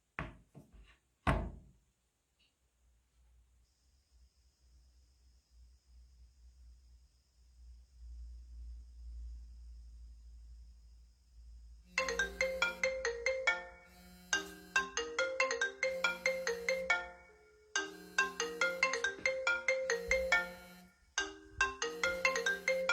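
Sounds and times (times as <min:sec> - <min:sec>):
phone ringtone melody: 0:12.0 - 0:22.9.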